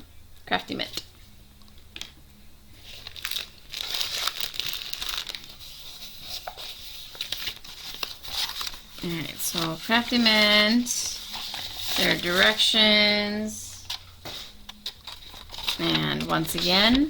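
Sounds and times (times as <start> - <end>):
packaging crinkling: 2.8 - 12.8, 13.8 - 17.0.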